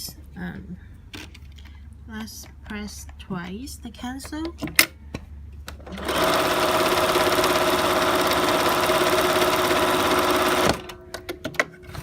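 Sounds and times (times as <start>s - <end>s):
sewing machine running: 5.9s - 11.0s.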